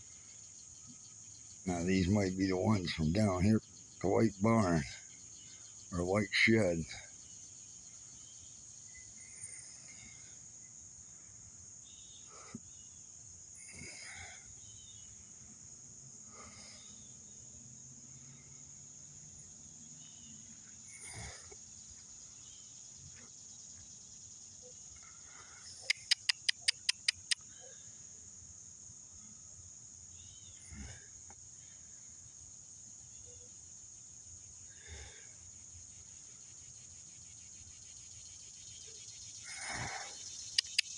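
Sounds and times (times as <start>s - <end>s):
high-pitched insect chorus: 0.0s - 40.9s
sharp clicks: 25.8s - 27.4s, 40.6s - 40.9s.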